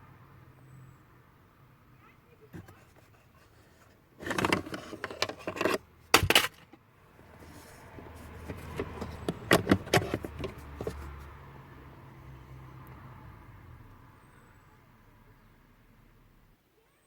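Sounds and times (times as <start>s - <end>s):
plastic rattling in dashboard: 2.6s - 6.8s, 7.4s - 11.3s
car running noise: 7.1s - 15.2s.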